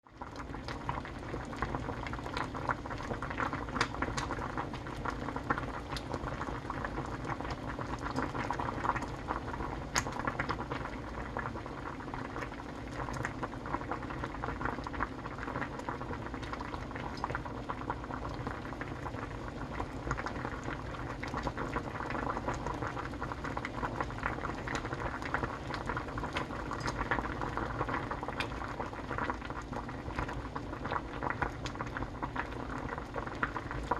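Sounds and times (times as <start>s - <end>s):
stew bubbling in a pot: 0.0s - 33.9s
small pops from stew: 3.7s - 4.4s.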